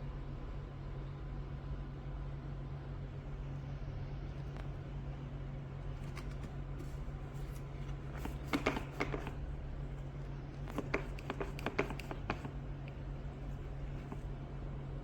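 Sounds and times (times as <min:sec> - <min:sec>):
steady low hum: 0:00.0 - 0:15.0
clicks and rustles of handling: 0:05.9 - 0:14.4.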